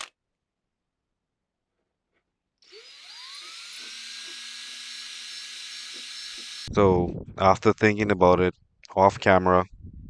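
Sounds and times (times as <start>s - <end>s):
power tool motor whining: 2.6s - 6.7s.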